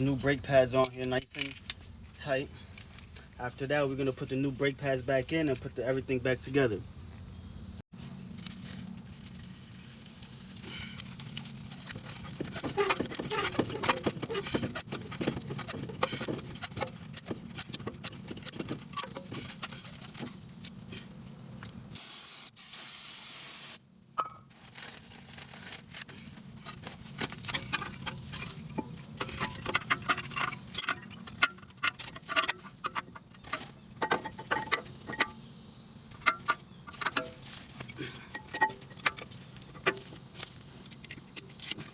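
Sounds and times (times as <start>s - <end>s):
tools and brake parts clinking: 0.0s - 1.9s, 2.6s - 3.3s, 10.5s - 21.9s, 24.2s - 24.6s, 25.3s - 35.4s, 36.1s - 41.9s
loud hiss: 21.9s - 23.8s.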